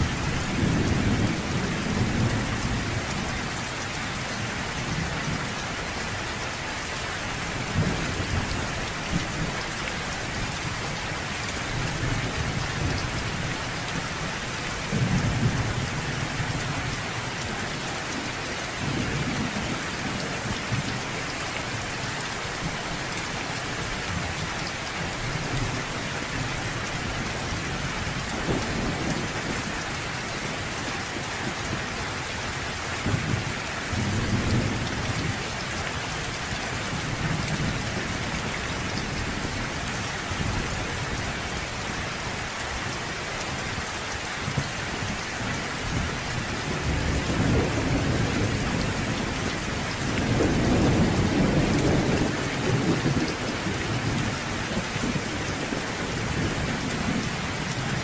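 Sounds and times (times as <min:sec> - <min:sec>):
thunder rumbling: 0:00.0 - 0:03.7, 0:45.9 - 0:58.0
steady rain falling: 0:00.0 - 0:58.0.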